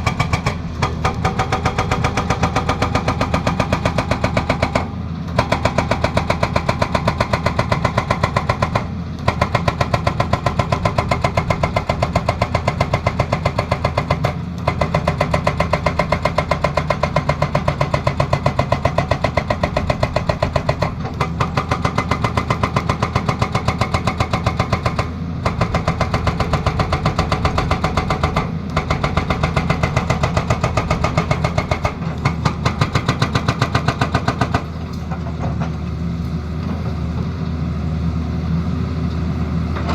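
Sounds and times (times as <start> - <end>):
hydraulic breaker hammering: 0.0 - 35.7.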